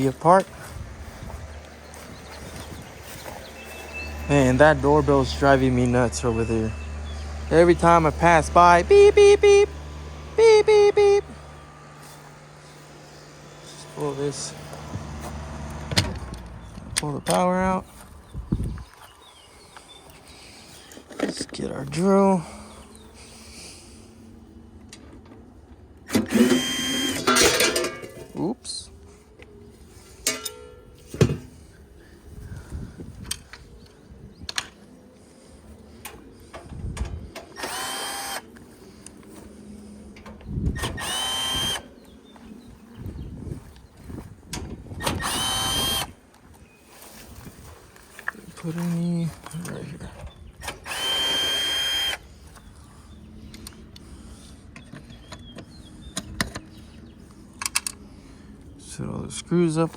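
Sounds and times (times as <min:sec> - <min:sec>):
cordless drill whine: 0:26.1 - 0:27.3, 0:37.5 - 0:38.6, 0:40.8 - 0:41.9, 0:45.0 - 0:46.2, 0:50.6 - 0:52.3
tools and sheet metal clinking: 0:26.3 - 0:28.4, 0:30.2 - 0:31.5.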